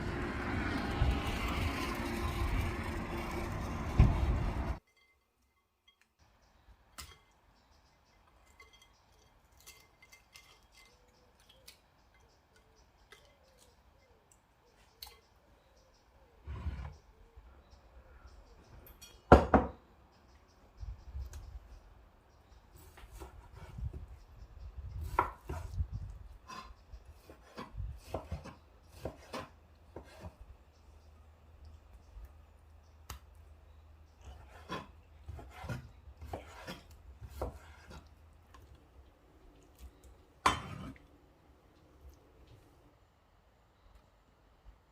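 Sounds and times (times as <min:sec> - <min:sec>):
small clicks and clinks: 0:08.2 - 0:14.4
knife chopping on cutting board: 0:27.3 - 0:30.3, 0:34.4 - 0:38.0.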